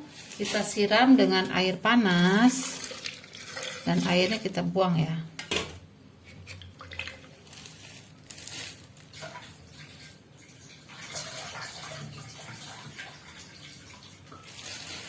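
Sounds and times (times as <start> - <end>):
hot water pouring and splashing: 0.0 - 4.6, 6.6 - 15.0.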